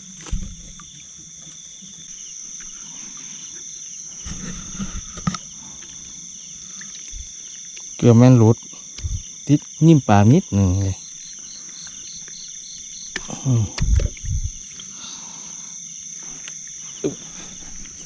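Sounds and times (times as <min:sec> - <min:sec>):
insects chirring: 0:00.0 - 0:18.0.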